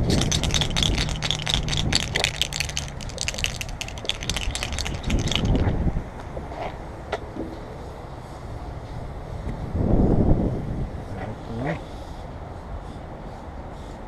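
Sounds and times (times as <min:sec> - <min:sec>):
rattling clatter of small clicks: 0:00.0 - 0:05.7.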